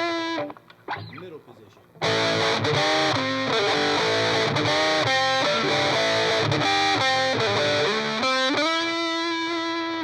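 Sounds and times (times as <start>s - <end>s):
distorted electric guitar lead: 0.0s - 1.4s, 2.0s - 10.0s.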